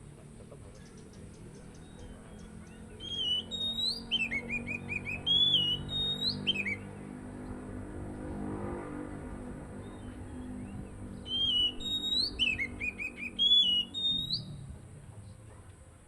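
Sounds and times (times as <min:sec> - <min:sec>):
bird singing clear whistles: 0:00.9 - 0:06.9, 0:11.2 - 0:14.6.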